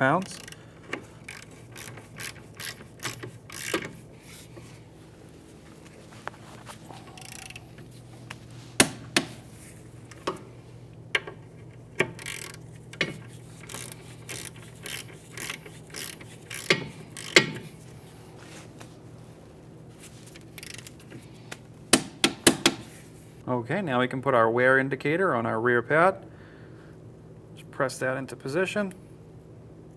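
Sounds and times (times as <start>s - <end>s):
socket ratchet clicking: 0.0s - 4.0s, 7.2s - 7.8s, 8.8s - 10.5s, 11.2s - 17.8s, 20.6s - 21.0s, 22.0s - 22.9s.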